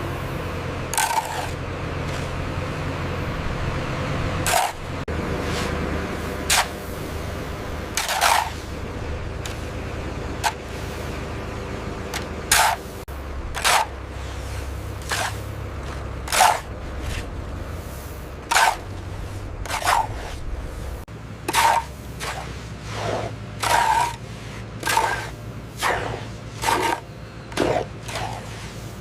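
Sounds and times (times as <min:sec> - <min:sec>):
construction machine engine running: 0:00.0 - 0:29.0
swishing scraping strokes: 0:04.4 - 0:09.8, 0:12.5 - 0:29.0.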